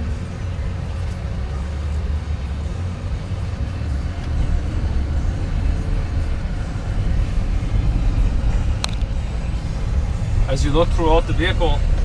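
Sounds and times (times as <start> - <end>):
road and engine rumble: 0.0 - 12.0.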